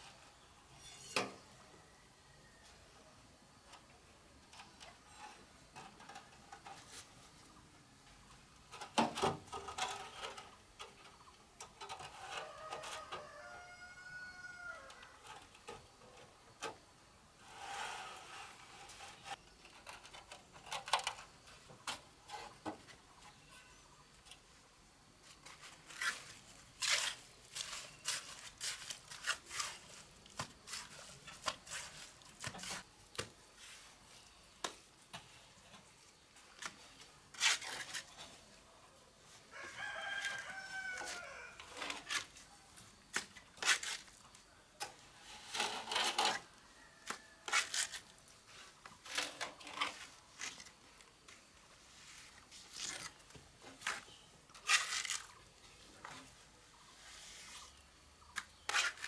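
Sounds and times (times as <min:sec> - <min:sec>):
rooster crowing: 0:12.3 - 0:15.2, 0:39.5 - 0:41.8.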